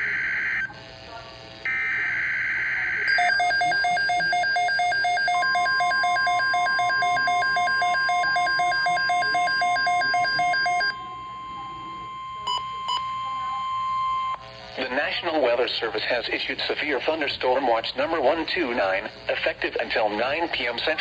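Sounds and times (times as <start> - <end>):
steady warning alarm tone: 1.6 - 14.4
rapid alarm beeps: 1.7 - 14.4.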